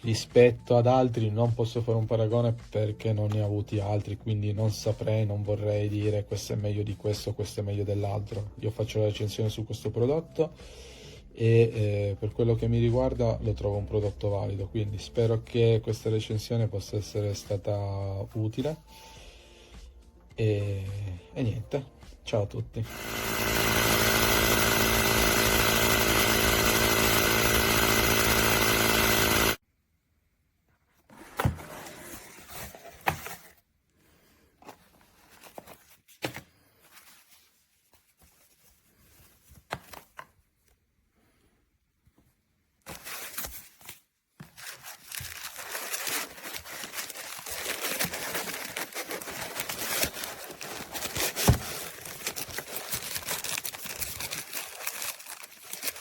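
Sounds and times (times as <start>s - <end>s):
electric compressor motor running: 22.8s - 29.6s
rustling scraping handling noise: 34.6s - 40.4s, 42.8s - 56.0s.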